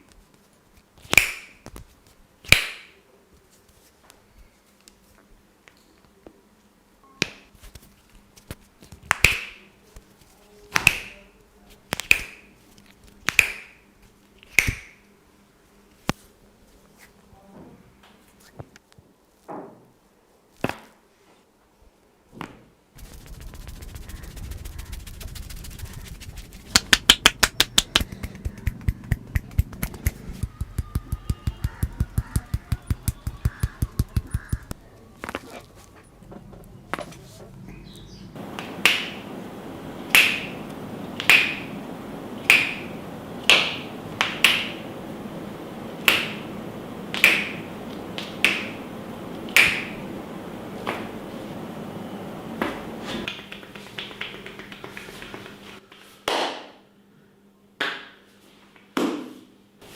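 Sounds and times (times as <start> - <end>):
hands slapping skin: 1.0 - 1.8, 9.1 - 9.6, 10.8 - 11.2, 11.9 - 12.5, 13.2 - 13.8, 14.5 - 15.0, 23.0 - 34.8, 38.6 - 39.3, 40.1 - 40.6, 41.2 - 41.7, 42.4 - 44.8, 46.0 - 46.4, 47.1 - 47.6, 48.2 - 48.8, 49.5 - 49.9, 53.2 - 56.7
sharp snapping cracks on skin: 11.9 - 12.4.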